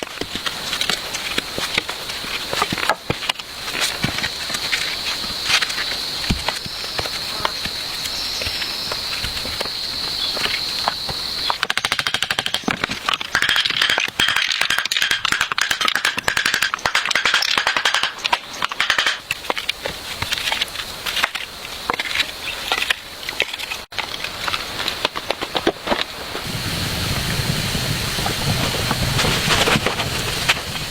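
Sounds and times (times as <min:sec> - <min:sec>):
dense crackling clicks: 0:20.4 - 0:30.9.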